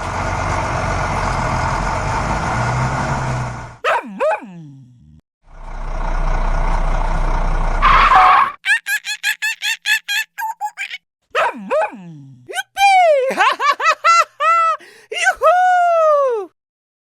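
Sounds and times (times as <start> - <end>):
swooping squeals: 7.8 - 8.6.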